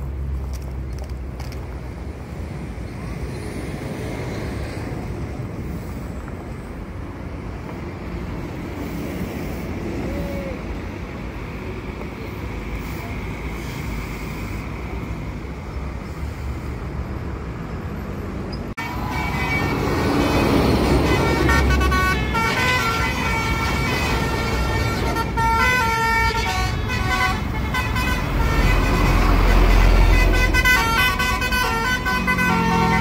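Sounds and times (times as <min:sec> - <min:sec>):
rumble of vehicle engines: 0:00.0 - 0:33.0
bus horn playing a tune: 0:18.8 - 0:33.0.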